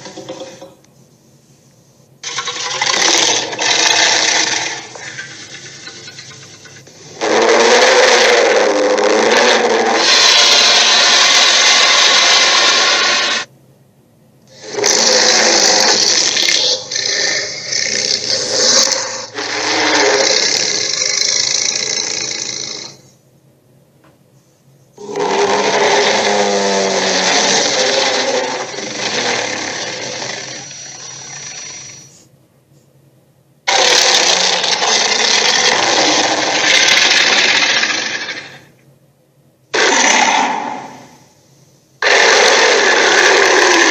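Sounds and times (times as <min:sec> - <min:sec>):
dragon roars and growls: 0:07.1 - 0:13.5, 0:14.5 - 0:23.0, 0:25.0 - 0:32.0, 0:33.7 - 0:38.6, 0:39.7 - 0:41.2, 0:42.0 - 0:43.9.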